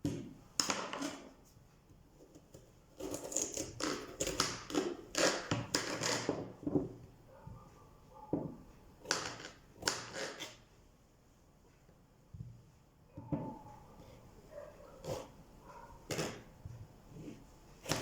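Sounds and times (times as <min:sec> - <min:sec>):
knife chopping on cutting board: 0:17.2 - 0:18.0.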